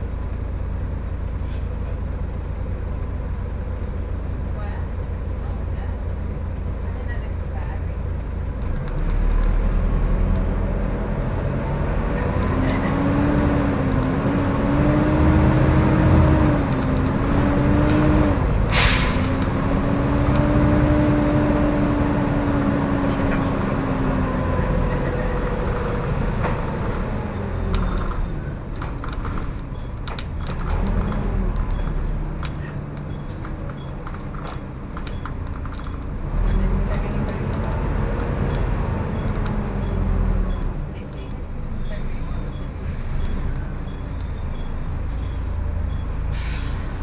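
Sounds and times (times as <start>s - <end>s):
bus engine whine: 0.0s - 47.0s
high beep: 27.2s - 28.6s.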